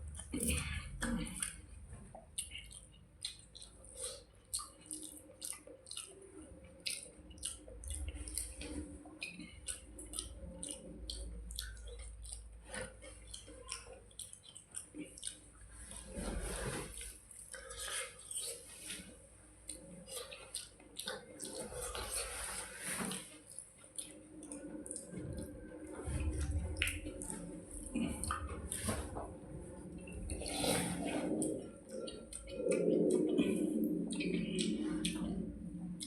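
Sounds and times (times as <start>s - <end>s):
wet chewing sounds: 0.0s - 36.0s.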